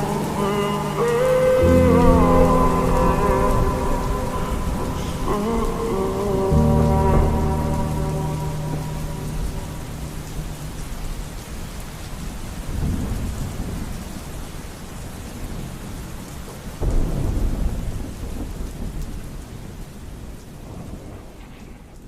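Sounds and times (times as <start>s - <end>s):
thunder clap: 0.0s - 14.0s, 16.8s - 19.8s
thunder rumbling: 0.0s - 14.2s, 16.8s - 22.0s
steady rain: 0.0s - 22.0s.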